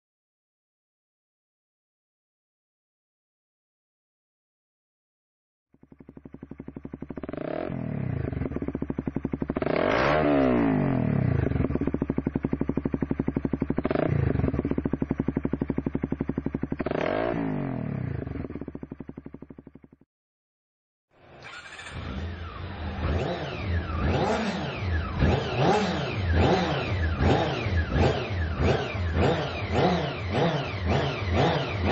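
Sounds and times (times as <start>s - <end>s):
motorcycle engine revving: 5.7s - 20.1s, 21.2s - 31.9s.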